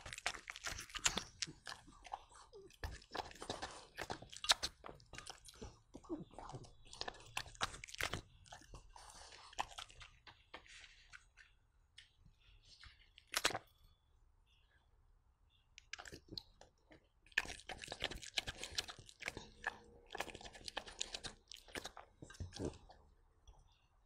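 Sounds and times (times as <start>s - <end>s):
dog chewing with wet crunching: 0.0s - 11.6s, 15.8s - 23.1s.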